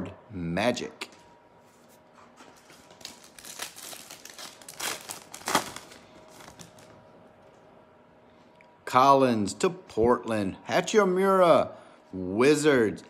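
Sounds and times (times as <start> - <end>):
wrapper crinkling and tearing: 2.6 - 7.0.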